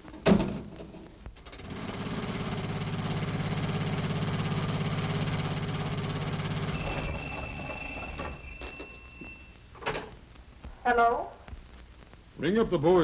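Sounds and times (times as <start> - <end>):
high ringing tone: 6.6 - 9.7.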